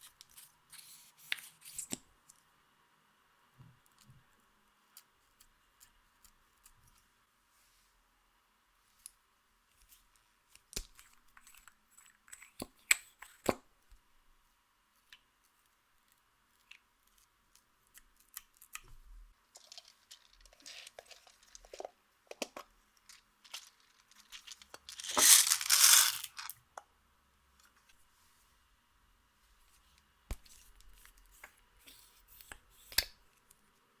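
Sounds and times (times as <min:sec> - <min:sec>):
packaging tearing rustle: 0:23.1 - 0:26.5.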